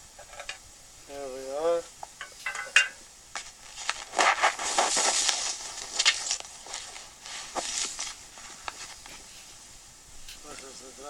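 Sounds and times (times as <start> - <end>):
rustling and scraping: 2.1 - 10.8.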